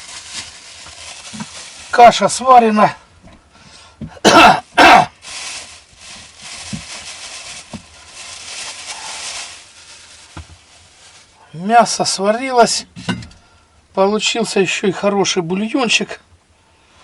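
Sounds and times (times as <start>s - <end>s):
soft steady hiss: 0.0s - 17.0s
man coughing harshly: 4.1s - 5.2s.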